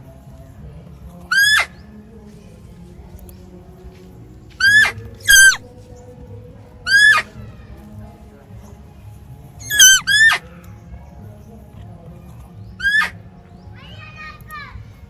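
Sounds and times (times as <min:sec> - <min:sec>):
high-pitched animal calls: 0:01.3 - 0:01.8, 0:04.6 - 0:05.6, 0:06.8 - 0:07.4, 0:09.6 - 0:10.5, 0:12.8 - 0:13.2.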